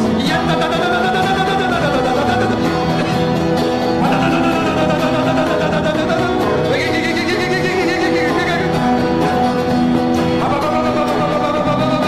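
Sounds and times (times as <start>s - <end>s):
worship music with guitar: 0.0s - 12.0s.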